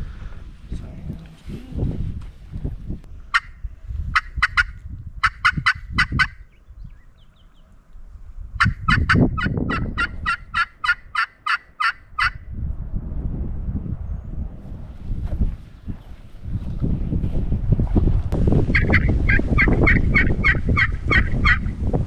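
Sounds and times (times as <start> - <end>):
wind rumble on microphone: 0.0 - 11.2, 11.9 - 22.0
turkey call yelps: 3.3 - 6.5, 8.6 - 12.4, 18.7 - 21.7.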